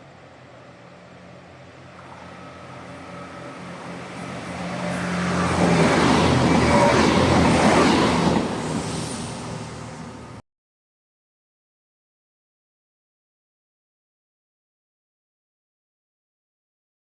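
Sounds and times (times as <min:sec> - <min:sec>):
diesel train engine drone: 0:00.0 - 0:10.4.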